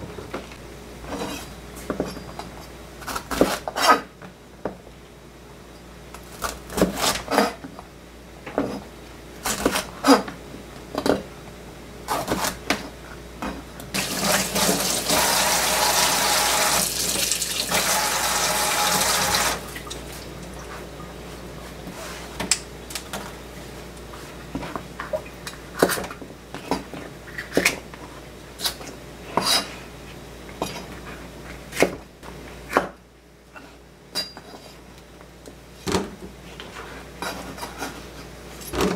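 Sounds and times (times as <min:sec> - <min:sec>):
water running from a tap: 0:14.0 - 0:20.0.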